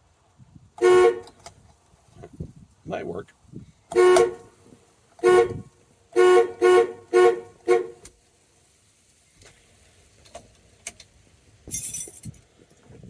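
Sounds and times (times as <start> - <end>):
truck horn honks: 0.8 - 1.4, 3.9 - 4.5, 5.2 - 8.1.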